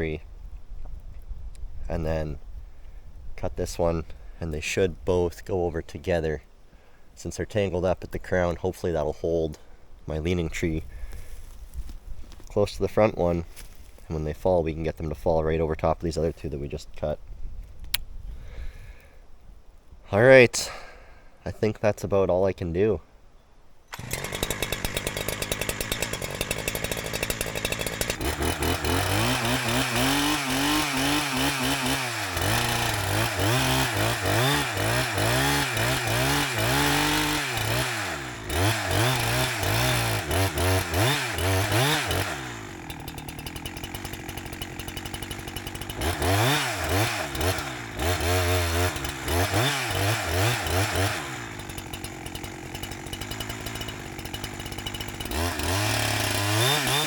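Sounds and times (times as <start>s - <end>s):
chainsaw revving and idling: 23.9s - 57.0s.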